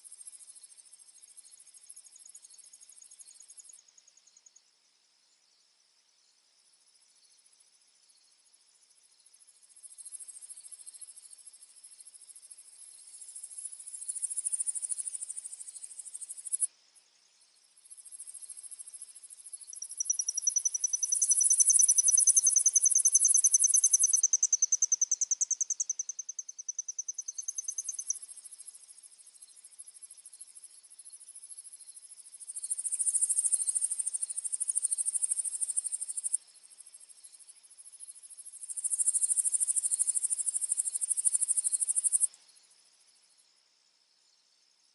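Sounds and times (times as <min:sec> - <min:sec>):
insect chorus trilling: 0:08.2 - 0:17.1, 0:17.8 - 0:42.6.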